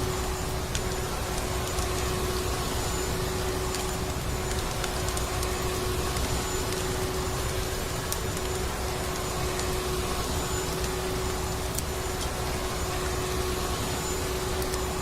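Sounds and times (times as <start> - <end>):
wood fire crackling: 0.0 - 15.0.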